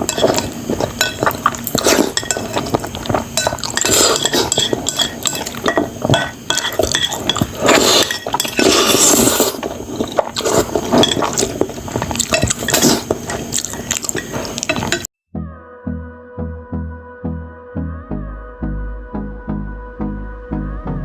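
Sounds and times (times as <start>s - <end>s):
chewing and slurping noodles: 0.0s - 15.1s
cutlery clinking against bowl: 0.0s - 15.1s.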